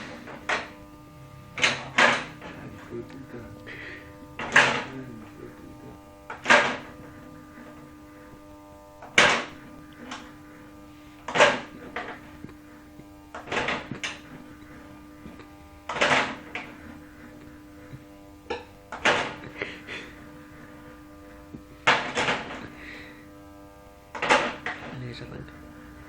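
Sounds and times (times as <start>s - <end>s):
electric fan motor humming: 0.0s - 26.0s
loud rattling knocks: 9.1s - 9.6s, 24.2s - 24.8s.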